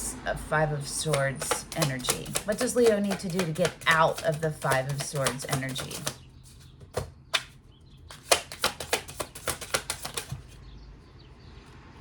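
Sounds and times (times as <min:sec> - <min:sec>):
cards being shuffled: 0:01.4 - 0:06.2, 0:06.8 - 0:10.6.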